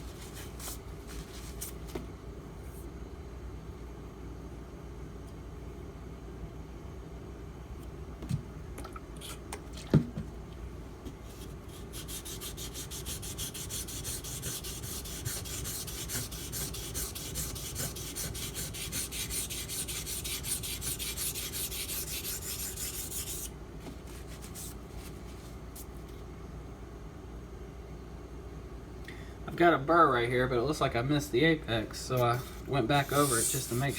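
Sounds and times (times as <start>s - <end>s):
knife scraping on wet whetstone: 11.9s - 23.5s, 32.2s - 33.9s.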